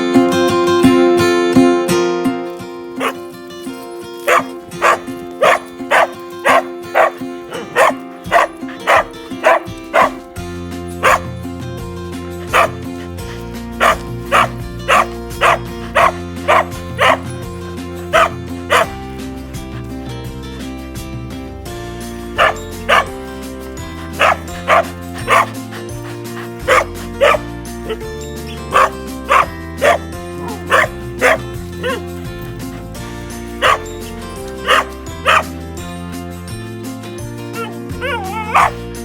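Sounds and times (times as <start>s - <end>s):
background music: 0.0s - 39.0s
dog barking: 3.0s - 3.3s, 4.2s - 11.4s, 12.4s - 19.1s, 22.3s - 35.9s, 37.4s - 38.9s.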